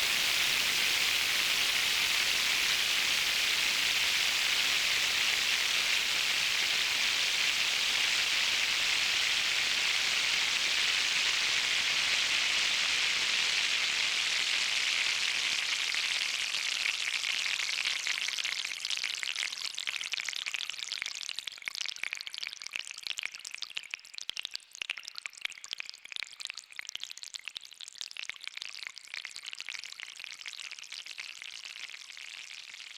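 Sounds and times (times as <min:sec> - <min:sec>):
synthesized rain hiss: 0:00.0 - 0:16.4.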